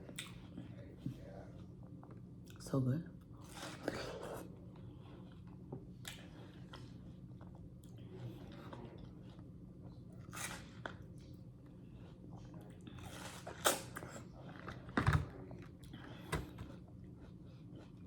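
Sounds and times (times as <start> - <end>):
person chewing watermelon: 3.4 - 14.8, 15.6 - 18.0.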